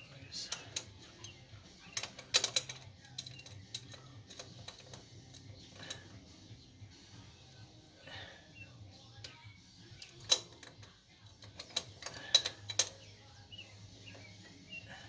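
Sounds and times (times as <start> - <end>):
metallic clicks of wrench: 0.5 - 6.1, 10.0 - 13.1.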